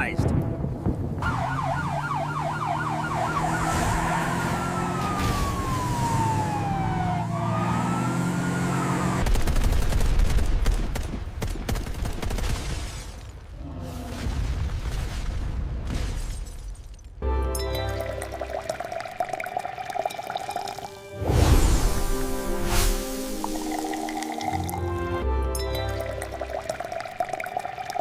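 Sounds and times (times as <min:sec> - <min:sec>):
emergency siren wailing: 0:01.2 - 0:09.2.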